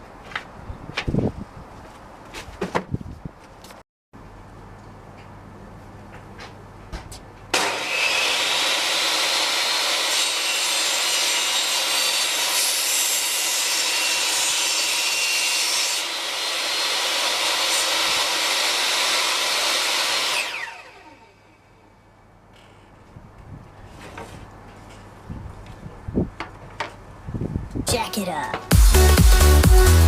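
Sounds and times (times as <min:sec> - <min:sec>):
table saw cutting wood: 0:07.5 - 0:21.4.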